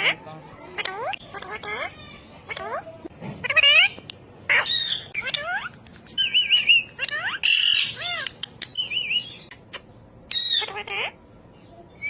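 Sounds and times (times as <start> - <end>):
parrot calling: 0.0 - 11.2.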